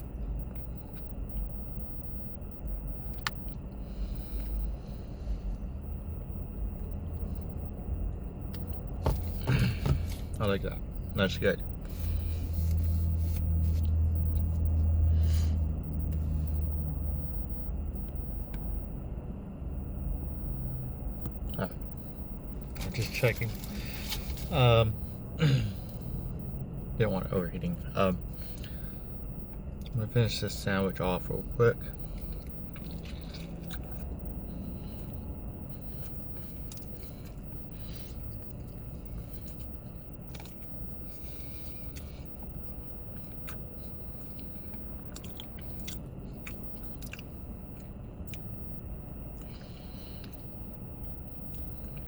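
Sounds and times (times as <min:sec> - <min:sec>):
person chewing a sandwich: 0:00.0 - 0:18.9, 0:20.2 - 0:27.0, 0:28.2 - 0:30.0, 0:31.3 - 0:52.0
car engine idling: 0:00.0 - 0:52.0
mouth clicks and smacks: 0:31.9 - 0:52.0.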